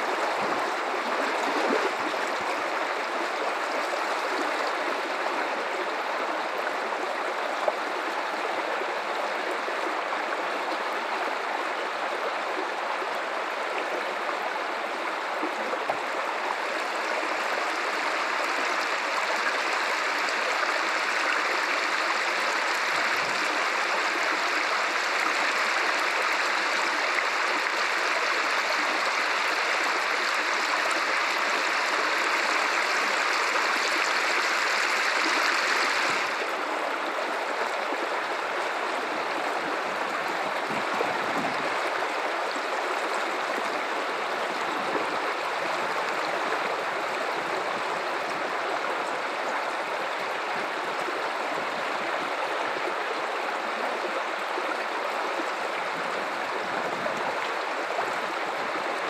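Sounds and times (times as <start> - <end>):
river water rushing: 0.0 - 59.0.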